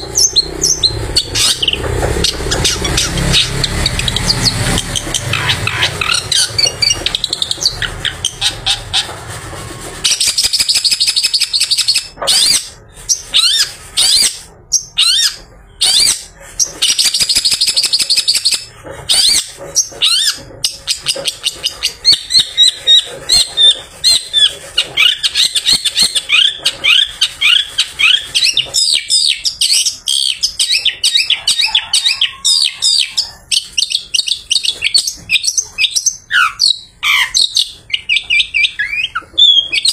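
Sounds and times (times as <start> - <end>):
bird singing chattering notes: 0.0 - 9.1, 10.1 - 39.9.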